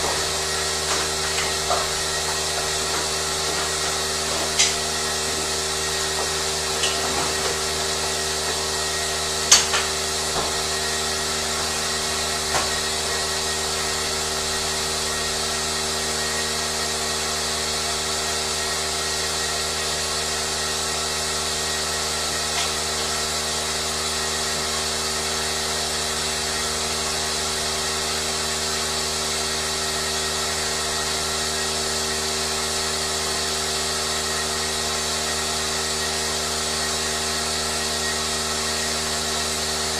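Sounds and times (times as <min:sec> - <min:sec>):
machine hum: 0:00.0 - 0:39.9
sharp clicks and knocks: 0:04.3 - 0:04.8, 0:06.8 - 0:07.6.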